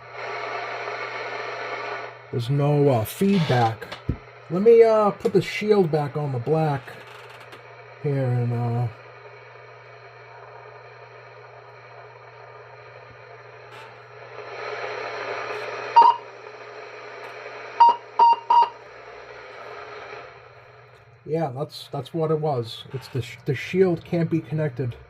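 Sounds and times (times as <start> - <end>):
low hum: 0.0 - 25.0
radio receiver hiss: 0.0 - 25.0
short beeps: 16.0 - 16.2, 17.8 - 18.8.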